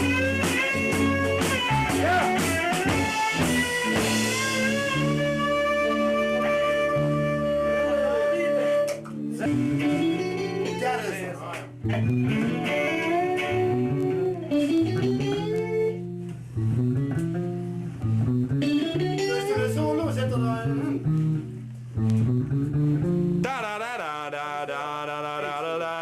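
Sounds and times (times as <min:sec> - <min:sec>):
bass guitar line: 0:00.0 - 0:23.6
electric guitar lead line: 0:00.0 - 0:23.8.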